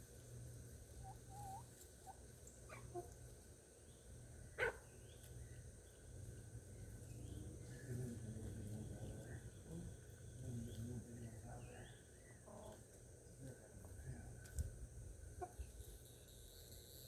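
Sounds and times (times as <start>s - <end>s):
dog barking: 4.6s - 4.8s.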